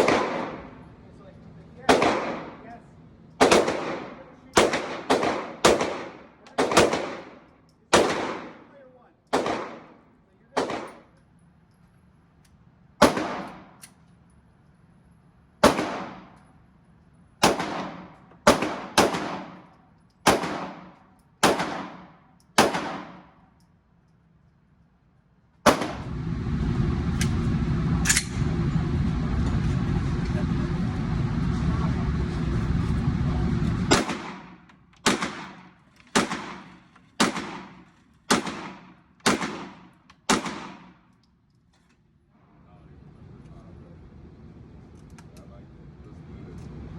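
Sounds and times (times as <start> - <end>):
gunshots with echo: 0.0 - 0.8, 1.9 - 2.6, 3.4 - 8.7, 9.4 - 10.0, 10.6 - 11.1, 13.0 - 13.8, 15.6 - 16.4, 17.4 - 23.4, 25.7 - 26.1, 33.9 - 41.0.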